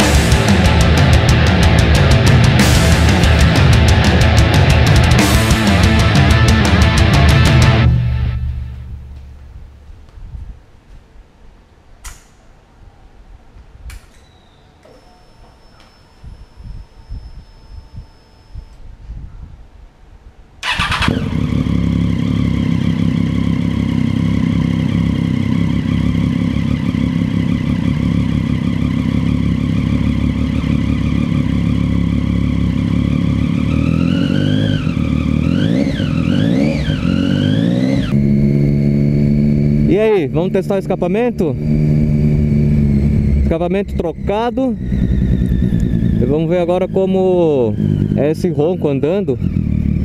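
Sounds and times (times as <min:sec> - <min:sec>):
motorcycle engine idling and revving: 0:00.0 - 0:10.2, 0:20.6 - 0:50.0.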